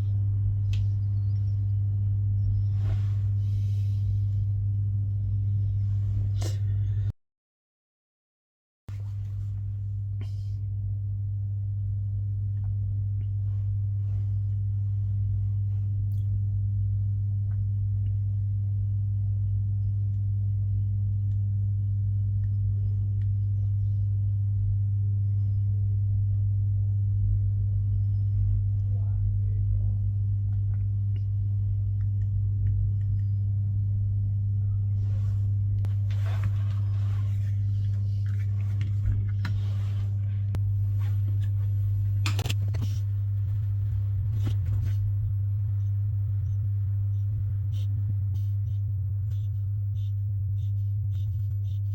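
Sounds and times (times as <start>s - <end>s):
steady low hum: 0.0s - 7.2s, 8.9s - 51.9s
rustling and handling noise: 2.6s - 4.8s, 8.9s - 9.9s, 35.0s - 45.7s.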